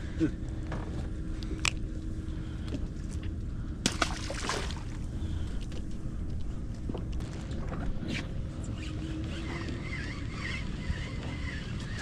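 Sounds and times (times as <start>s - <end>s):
boat engine rumble: 0.0s - 12.0s
water sloshing: 3.9s - 5.1s.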